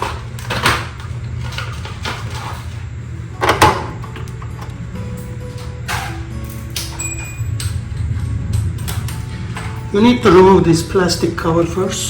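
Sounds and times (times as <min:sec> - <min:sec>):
low hum: 0:00.0 - 0:12.0.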